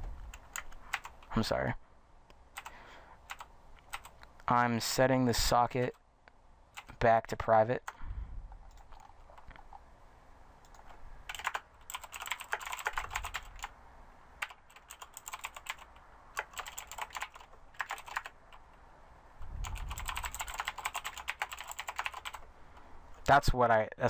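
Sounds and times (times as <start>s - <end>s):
computer keyboard typing: 0.3s - 1.3s, 2.5s - 4.3s, 6.7s - 7.0s, 8.6s - 9.8s, 10.6s - 13.7s, 14.4s - 18.7s, 19.6s - 22.5s.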